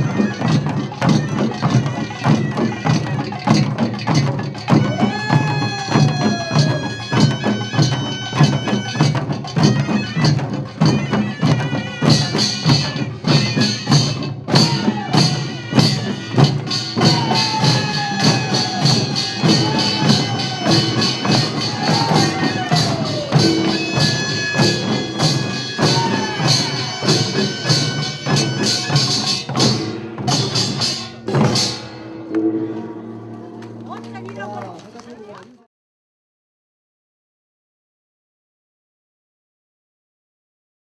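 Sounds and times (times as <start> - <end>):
drums: 0.0 - 35.6
clanging small gongs: 6.5 - 34.4
shrill reed horn: 11.2 - 29.8.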